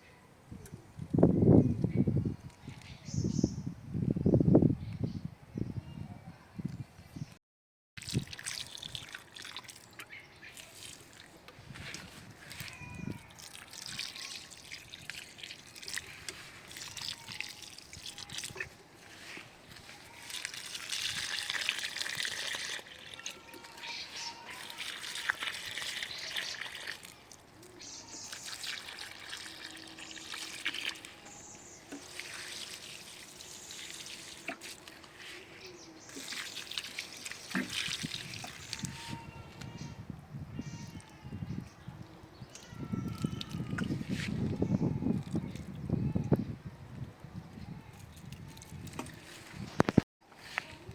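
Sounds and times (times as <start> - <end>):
water trickling and splashing: 8.0 - 39.4, 42.5 - 45.8.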